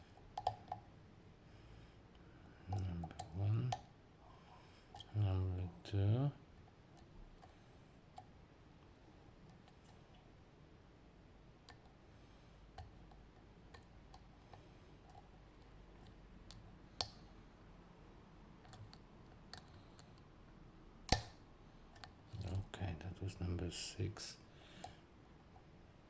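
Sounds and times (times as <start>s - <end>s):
lock pick ticking on pins: 0.4s - 0.8s
lock cylinder clicking: 21.1s - 21.4s.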